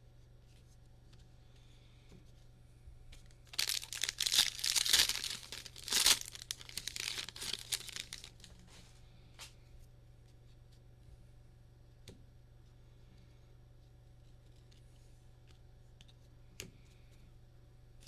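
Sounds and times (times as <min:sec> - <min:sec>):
foil wrapper tearing and crinkling: 0:03.5 - 0:08.5.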